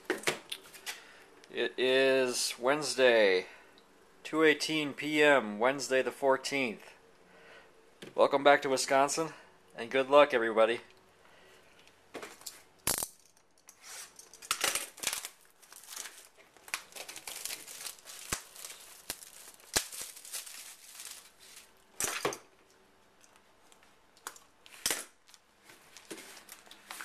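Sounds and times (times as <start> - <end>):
plastic wrapping tearing and crinkling: 13.9 - 22.2, 24.7 - 27.0.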